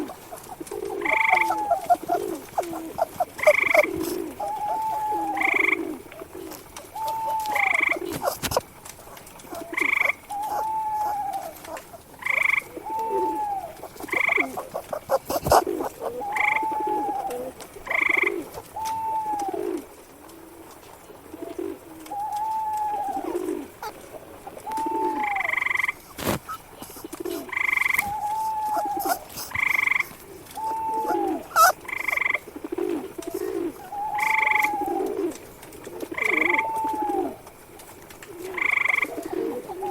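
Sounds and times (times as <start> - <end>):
rising and falling animal calls: 0.0 - 8.7, 9.5 - 19.8, 22.2 - 32.4, 33.6 - 35.4
low croak-like calls: 0.0 - 39.9.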